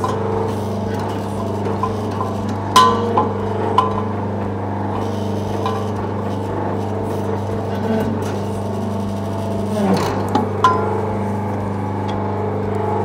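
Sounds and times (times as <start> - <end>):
electric motor hum: 0.0 - 13.0.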